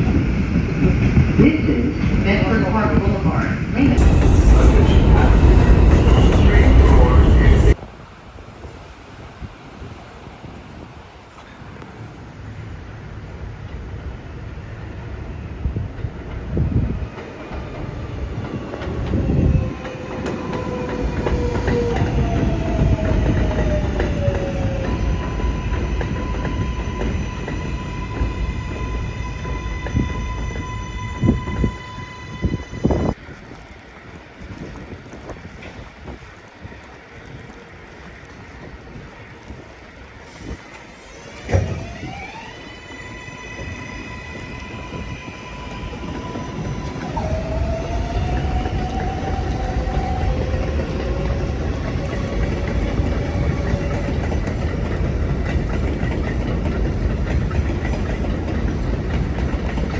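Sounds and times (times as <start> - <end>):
outdoor noise: 0.0 - 59.9
train rumbling on rails: 0.0 - 59.9.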